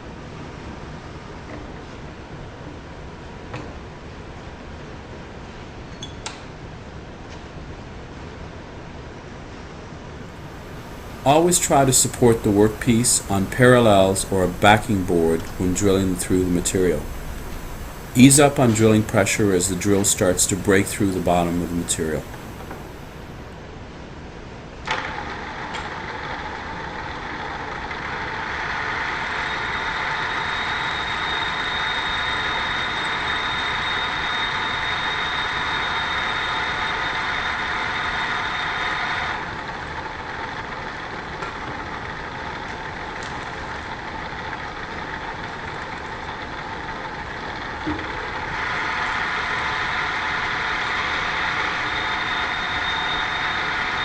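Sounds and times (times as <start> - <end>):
drill press whining: 10.3 - 23.6, 24.9 - 54.0.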